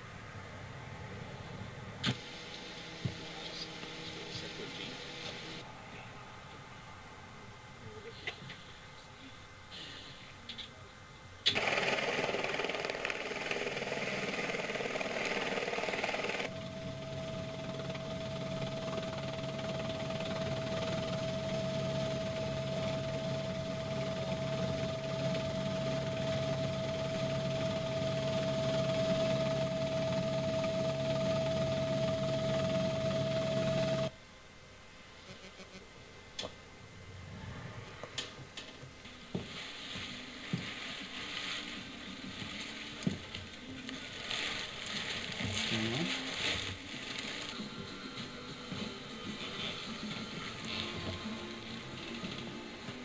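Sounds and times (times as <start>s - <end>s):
high whine: 0.0s - 8.3s, 12.7s - 53.0s
machinery motor running: 2.1s - 5.6s, 11.5s - 34.1s, 40.4s - 53.0s
low hum: 12.5s - 53.0s.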